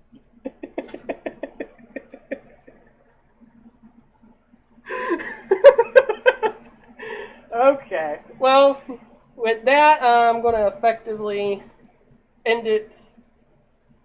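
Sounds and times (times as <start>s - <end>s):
person laughing: 0.4s - 2.9s, 4.9s - 7.4s.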